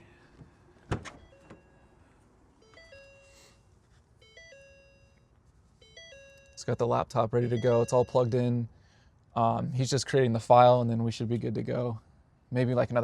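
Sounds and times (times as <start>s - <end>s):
faint electronic chime melody: 1.2s - 8.6s.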